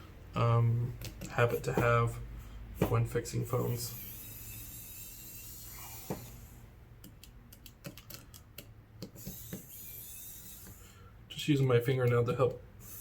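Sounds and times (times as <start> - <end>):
small tools clicking on plastic: 7.0 - 9.8.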